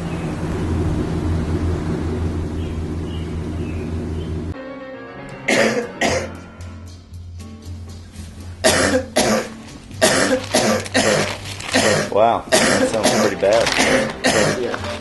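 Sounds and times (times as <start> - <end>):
background music: 4.6 - 15.0
person coughing: 5.5 - 6.3, 8.6 - 14.8.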